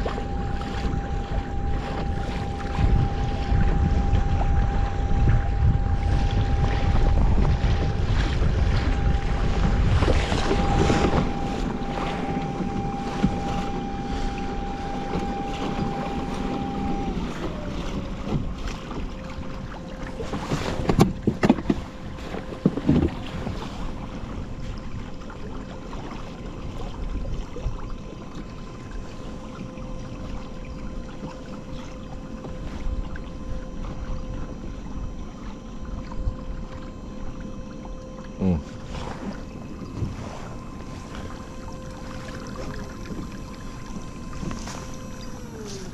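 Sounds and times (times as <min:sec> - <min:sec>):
wind noise: 0:00.0 - 0:14.6
motor whine: 0:00.0 - 0:45.9
water wash: 0:00.0 - 0:45.9.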